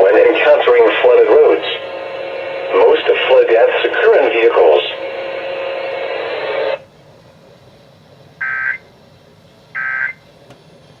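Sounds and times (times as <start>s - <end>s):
radio noise: 0.0s - 6.8s.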